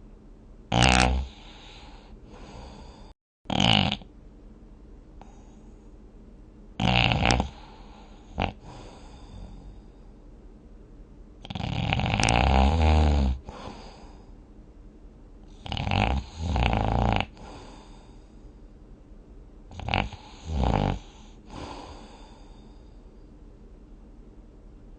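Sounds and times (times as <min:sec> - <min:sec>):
person snoring: 0:00.7 - 0:04.1, 0:06.8 - 0:09.9, 0:11.4 - 0:14.3, 0:15.5 - 0:18.3, 0:19.7 - 0:22.9.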